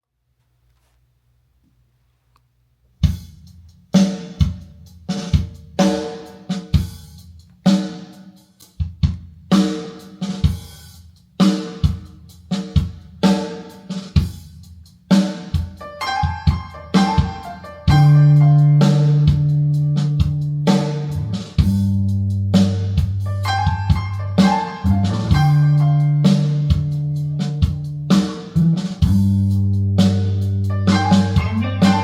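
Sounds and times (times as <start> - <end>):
drum kit beat: 3.0 - 32.0
pitched chords: 15.8 - 21.4, 22.4 - 32.0.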